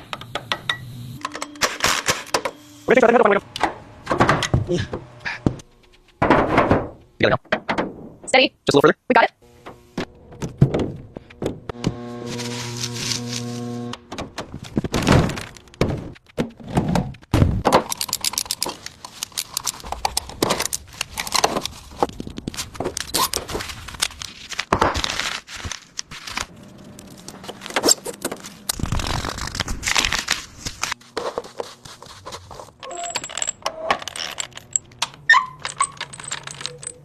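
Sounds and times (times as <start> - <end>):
thunks and metallic clatter: 3.5 - 8.5, 9.5 - 12.0, 14.0 - 23.8, 32.6 - 37.0.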